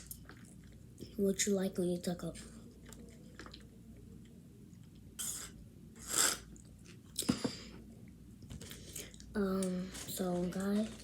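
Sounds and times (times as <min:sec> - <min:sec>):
chewing with crunchy bites: 0:00.0 - 0:01.1, 0:02.5 - 0:05.0.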